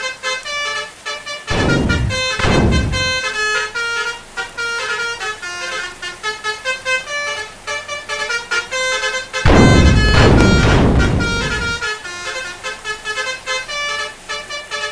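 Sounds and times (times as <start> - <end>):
multi-tone bus horns playing tune: 0.0 - 2.4, 3.0 - 9.4, 11.2 - 14.9
loud rushing noise blast: 1.5 - 3.3, 9.5 - 11.9.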